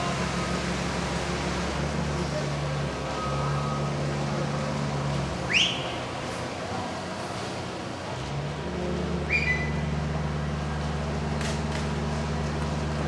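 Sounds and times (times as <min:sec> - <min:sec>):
heavy machine engine running: 0:00.0 - 0:13.0
short rising whistle: 0:09.3 - 0:09.9.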